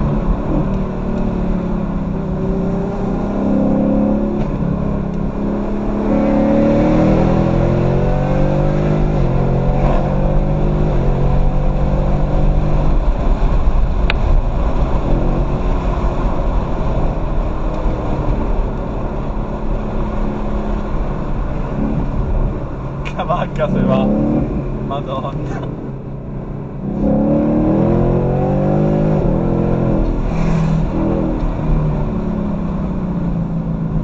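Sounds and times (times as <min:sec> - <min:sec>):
car engine accelerating: 0:00.0 - 0:34.0
steady noisy rush: 0:10.2 - 0:32.4.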